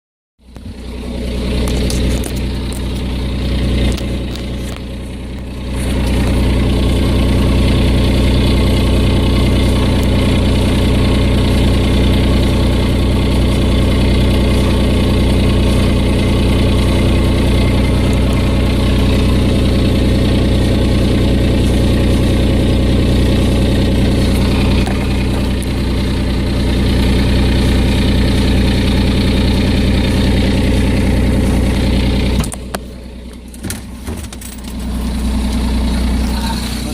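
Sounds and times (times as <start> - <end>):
car engine idling with exhaust leak: 0.4 - 36.9.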